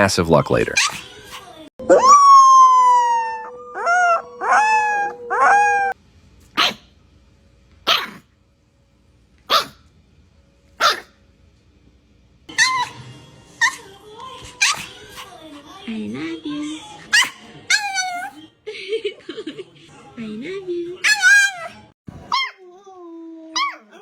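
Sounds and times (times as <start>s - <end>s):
dog whining: 1.8s - 6.0s, 12.5s - 13.0s, 13.6s - 15.3s, 17.0s - 18.4s, 21.0s - 22.6s, 23.4s - 24.0s.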